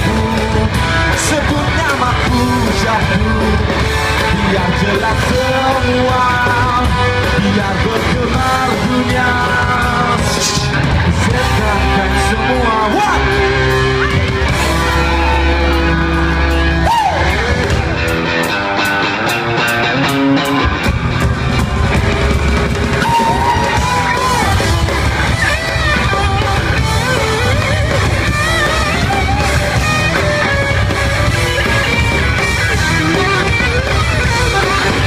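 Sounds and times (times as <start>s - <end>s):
person singing: 0.0s - 17.5s
drums: 0.0s - 35.0s
electric guitar: 0.0s - 35.0s.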